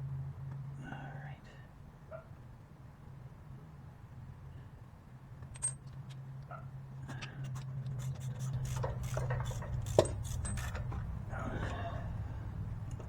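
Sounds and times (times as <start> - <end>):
tools and bolts clinking: 5.4 - 6.2, 7.4 - 11.1
steady low hum: 6.8 - 13.0.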